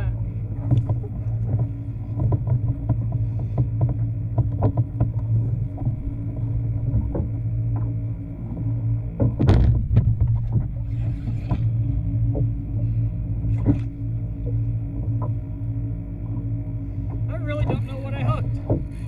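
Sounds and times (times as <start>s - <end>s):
low motor hum: 0.0s - 19.0s
light clicks and knocks: 0.5s - 12.6s.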